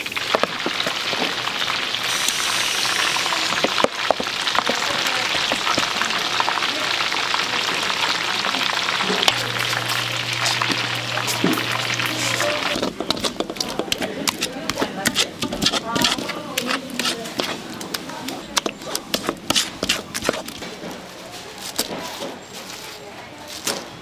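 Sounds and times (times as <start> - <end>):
food frying in hot oil: 0.0 - 20.7
low steady hum: 8.9 - 17.0.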